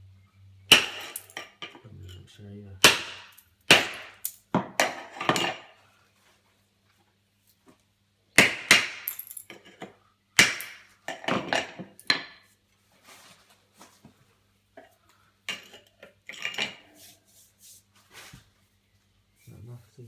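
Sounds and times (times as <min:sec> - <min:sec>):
stone chips clinking: 0:00.7 - 0:02.2.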